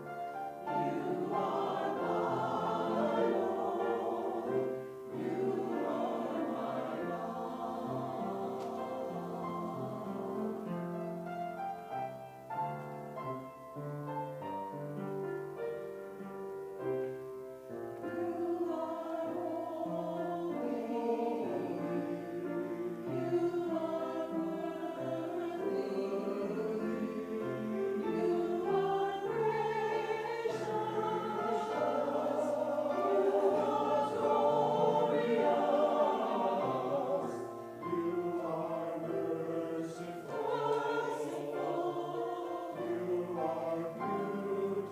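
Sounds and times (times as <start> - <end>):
church choir singing: 0.0 - 44.9.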